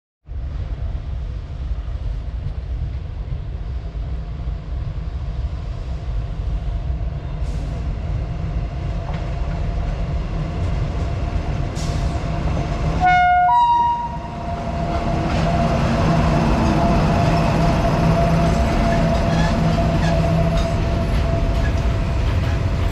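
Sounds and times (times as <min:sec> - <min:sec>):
freight train rumbling: 0:00.2 - 0:22.9
train horn two-note toot: 0:13.0 - 0:14.6.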